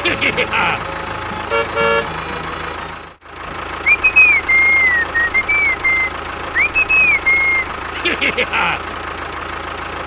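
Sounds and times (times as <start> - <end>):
engine idling: 0.0 - 10.0
person whistling a tune: 3.8 - 7.8.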